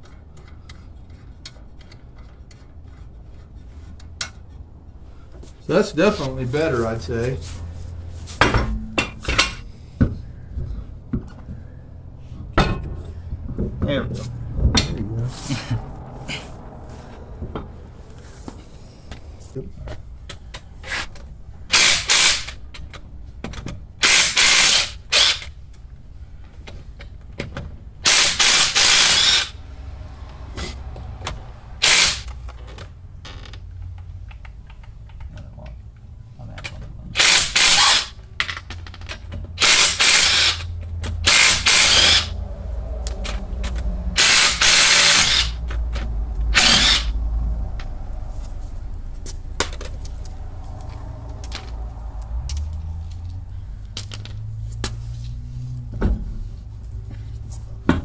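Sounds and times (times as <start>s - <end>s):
low steady rumble: 0.0s - 58.0s
power wrench bursts: 21.7s - 22.6s, 24.0s - 25.5s, 28.0s - 29.6s, 31.8s - 32.3s, 37.2s - 38.2s, 39.6s - 42.4s, 44.2s - 45.6s, 46.5s - 47.2s.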